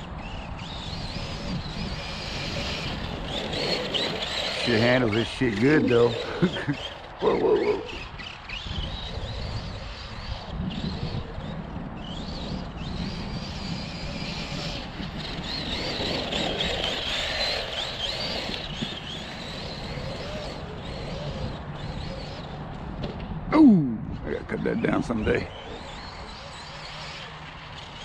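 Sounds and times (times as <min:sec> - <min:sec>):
electric motor whine: 0:00.0 - 0:23.2, 0:24.7 - 0:28.0
steady rushing noise: 0:00.0 - 0:28.0.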